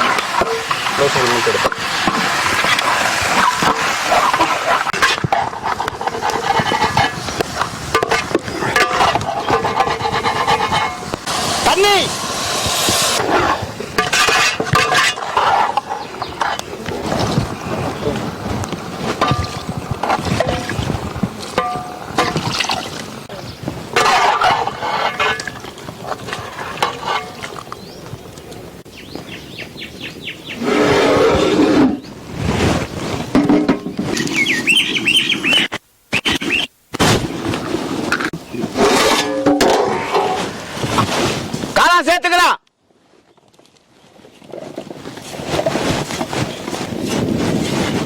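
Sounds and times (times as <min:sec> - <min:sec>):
birds chirping: 0:15.9 - 0:16.8, 0:27.3 - 0:31.2, 0:33.8 - 0:37.4.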